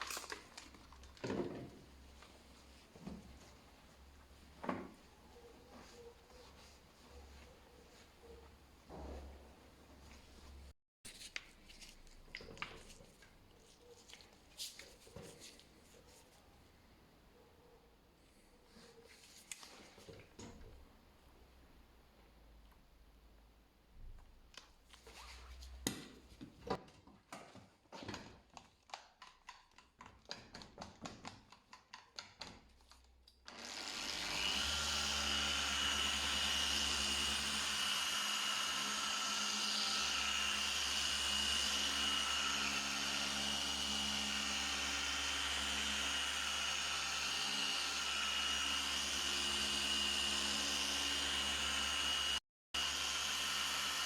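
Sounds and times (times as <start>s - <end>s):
tools clicking and knocking: 26.8s - 33.4s
power tool whining: 33.5s - 54.0s.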